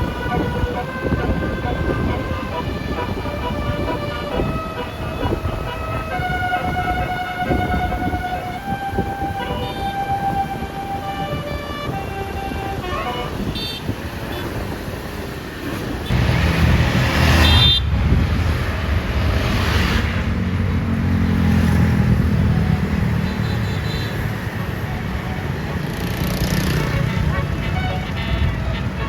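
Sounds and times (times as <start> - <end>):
multi-note bus horn tune: 0.0 - 14.7, 16.0 - 18.0, 26.7 - 29.0
bus engine rumble passing: 0.0 - 29.0
short horn toot: 17.3 - 18.0.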